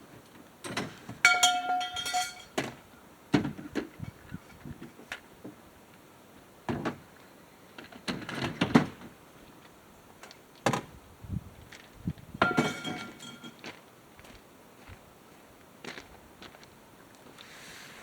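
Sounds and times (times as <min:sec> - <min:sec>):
objects knocking and clattering: 0:00.6 - 0:02.8, 0:12.4 - 0:13.6
metallic clang ringing: 0:01.2 - 0:02.6, 0:12.4 - 0:13.6.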